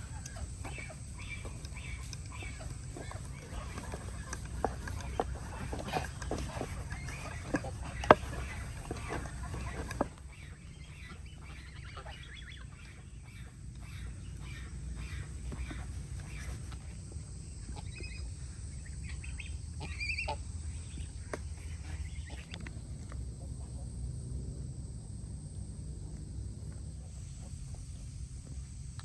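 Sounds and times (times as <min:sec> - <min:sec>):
fowl calling: 0:00.0 - 0:22.6
steady low rumble: 0:00.0 - 0:29.0.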